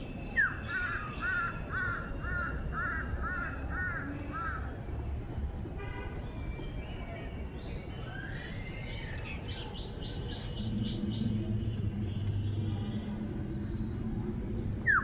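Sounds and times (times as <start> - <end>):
birds calling: 0.0 - 4.7, 14.8 - 15.0
low steady hum: 9.0 - 15.0.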